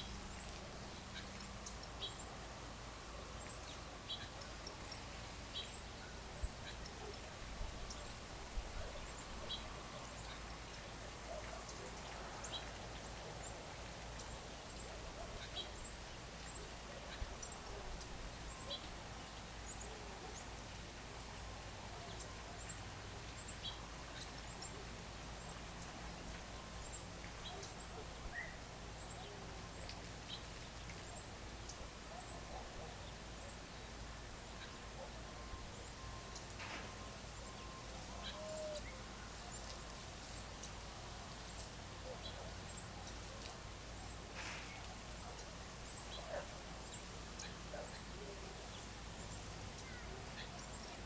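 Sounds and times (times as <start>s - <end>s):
birds chirping: 0.0s - 51.0s
faint outdoor background hiss: 0.0s - 51.0s
lower bird calls: 26.8s - 40.8s.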